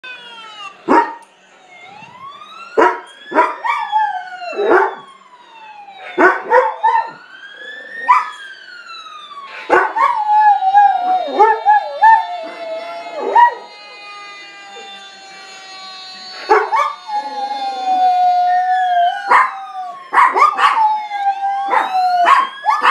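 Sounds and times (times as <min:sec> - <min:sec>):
fire truck siren wailing: 0:00.0 - 0:22.9
dog barking: 0:00.9 - 0:01.2, 0:02.8 - 0:03.6, 0:06.2 - 0:07.0, 0:20.2 - 0:20.8, 0:21.7 - 0:22.9
dog howling: 0:09.7 - 0:14.1, 0:16.3 - 0:22.9.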